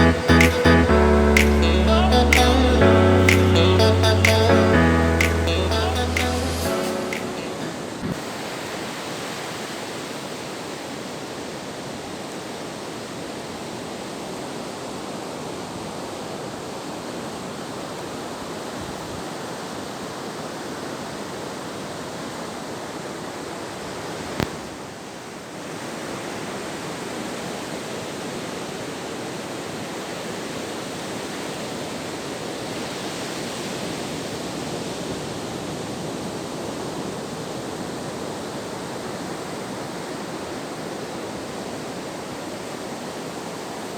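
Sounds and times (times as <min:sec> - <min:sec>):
ocean surf breaking: 0:00.0 - 0:10.6.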